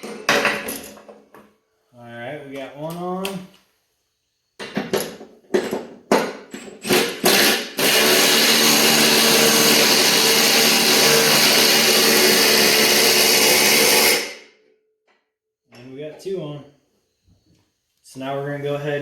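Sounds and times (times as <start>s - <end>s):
impact wrench: 6.1s - 14.4s.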